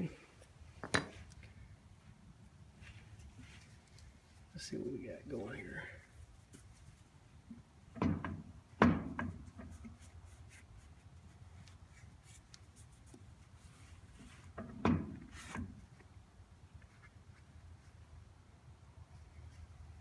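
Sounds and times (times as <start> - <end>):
metal clunks and knocks: 7.9 - 9.6, 14.5 - 15.3.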